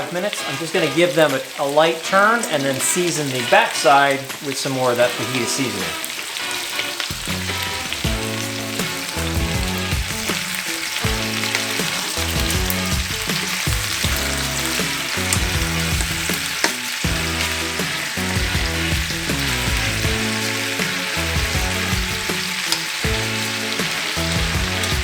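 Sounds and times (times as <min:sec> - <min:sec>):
background music: 0:00.0 - 0:25.0
chicken sizzling in a pan: 0:00.0 - 0:25.0
utensil clicking against pan: 0:09.9 - 0:25.0.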